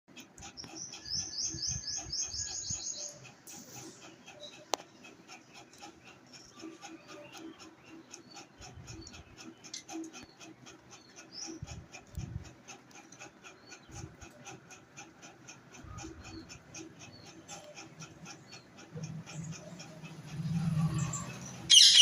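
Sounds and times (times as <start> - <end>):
parrot chirping: 19.1 - 22.0.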